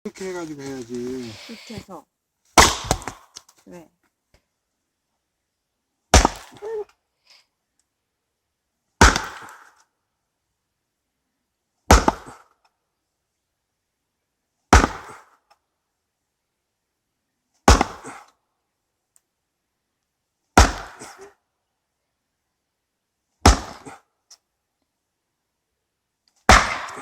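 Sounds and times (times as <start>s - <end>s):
axe chopping wood: 2.6s - 3.3s, 6.1s - 6.6s, 9.0s - 9.7s, 11.9s - 12.5s, 14.7s - 15.2s, 17.7s - 18.2s, 20.6s - 21.2s, 23.4s - 24.0s, 26.5s - 27.0s.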